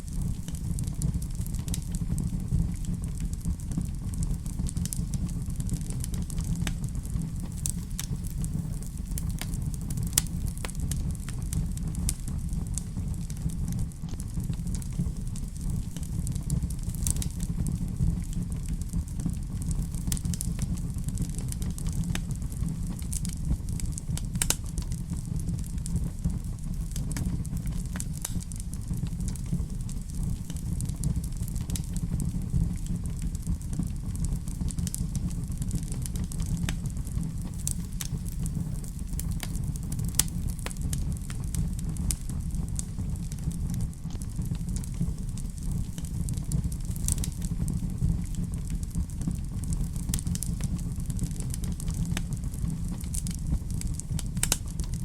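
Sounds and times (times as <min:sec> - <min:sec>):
wood fire crackling: 0:00.0 - 0:55.0
fire snapping loudly: 0:00.1 - 0:55.0.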